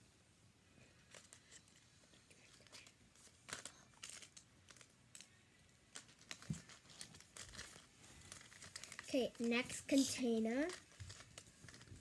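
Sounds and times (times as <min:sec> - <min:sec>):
plastic wrappers crinkling: 0:01.0 - 0:01.8, 0:02.4 - 0:12.0.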